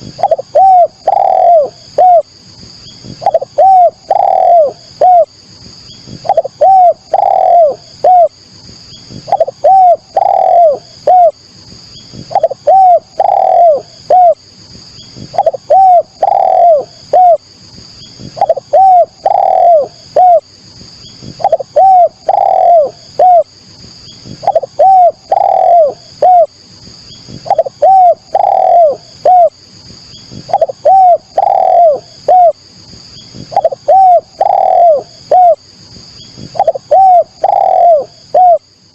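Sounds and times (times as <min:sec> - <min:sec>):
dove cooing: 0:00.0 - 0:02.3, 0:03.0 - 0:05.3, 0:06.1 - 0:08.4, 0:09.1 - 0:11.4, 0:12.2 - 0:14.4, 0:15.2 - 0:17.4, 0:18.2 - 0:20.5, 0:21.2 - 0:23.5, 0:24.2 - 0:26.5, 0:27.3 - 0:29.6, 0:30.3 - 0:32.6, 0:33.4 - 0:35.6, 0:36.4 - 0:38.7
faint high chirping: 0:00.0 - 0:38.9.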